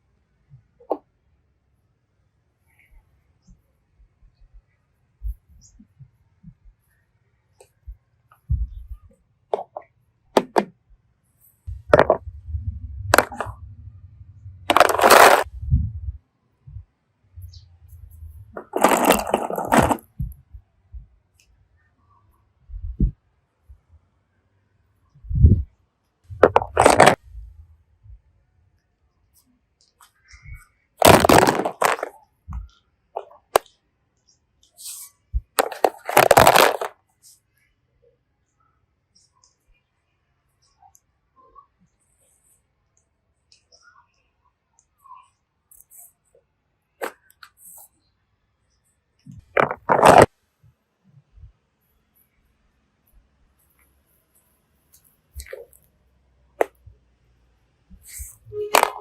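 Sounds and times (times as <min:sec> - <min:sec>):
plastic containers crackling: 0:11.7 - 0:13.7, 0:14.6 - 0:15.5, 0:17.5 - 0:20.2, 0:26.4 - 0:27.2, 0:31.0 - 0:32.2, 0:35.5 - 0:37.0, 0:49.3 - 0:50.3, 0:58.5 - 0:59.0
plastic pieces clicking: 0:11.9 - 0:12.2, 0:13.1 - 0:13.6, 0:14.7 - 0:15.5, 0:18.6 - 0:20.1, 0:26.4 - 0:27.2, 0:31.0 - 0:33.7, 0:35.6 - 0:37.0, 0:49.4 - 0:50.3, 0:58.1 - 0:59.0.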